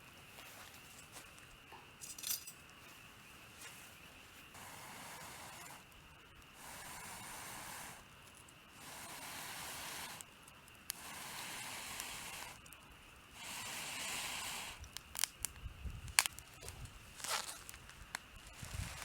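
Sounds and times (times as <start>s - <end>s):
cooking hiss: 0.0s - 19.0s
sharp crackles and clicks: 4.5s - 19.0s.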